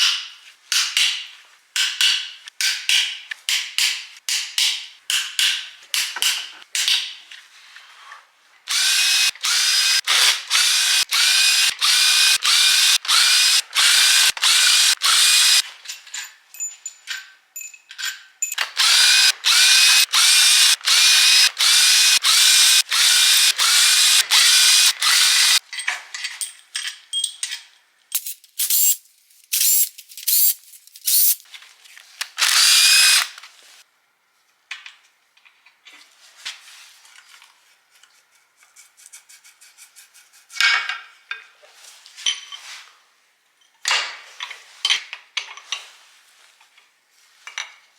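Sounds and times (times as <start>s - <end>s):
power tool whining in bursts: 8.7s - 15.6s, 18.8s - 25.6s, 32.4s - 33.3s.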